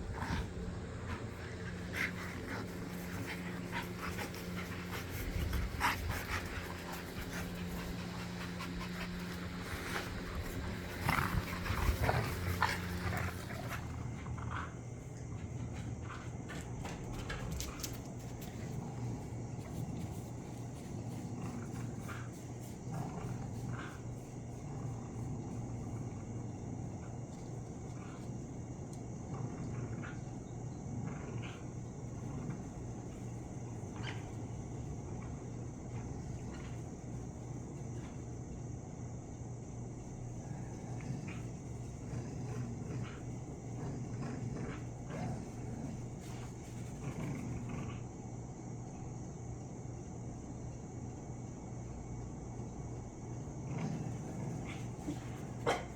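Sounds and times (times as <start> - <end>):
dog panting: 0.0 - 16.7, 40.2 - 47.7
dogs growling in play: 0.0 - 55.9
steady low hum: 0.0 - 55.9.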